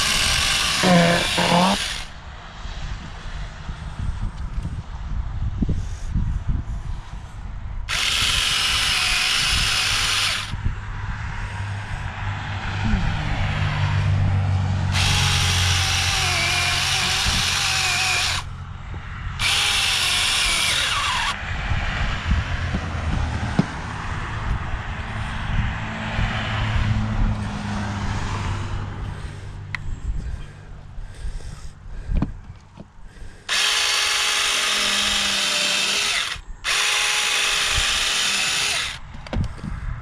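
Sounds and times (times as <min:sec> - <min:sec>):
chainsaw cutting into pumpkin: 0:00.0 - 0:02.1, 0:07.9 - 0:10.6, 0:14.9 - 0:18.5, 0:19.4 - 0:21.4, 0:33.4 - 0:39.0
steady low hum: 0:03.0 - 0:35.1.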